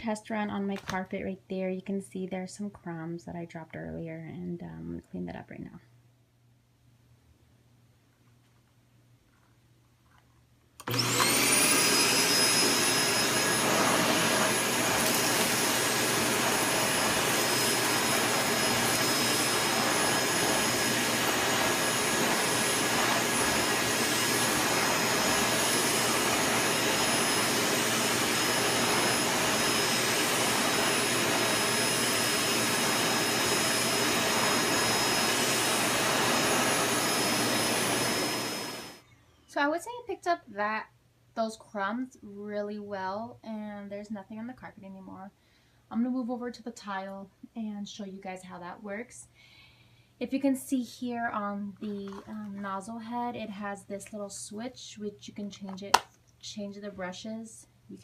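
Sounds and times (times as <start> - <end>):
vacuum cleaner motor whine: 10.8 - 39.5.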